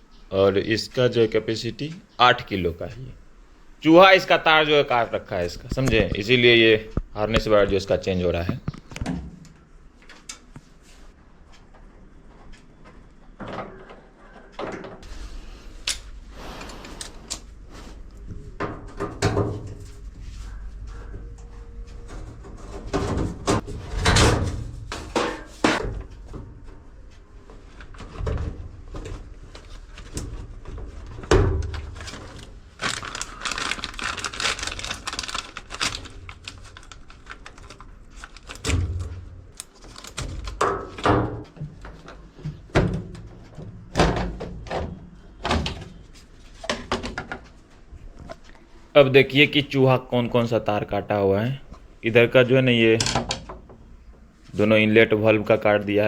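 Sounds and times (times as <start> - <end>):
scraping noise: 15.0 - 19.0
washing machine parts clattering: 18.6 - 47.6, 53.0 - 54.0.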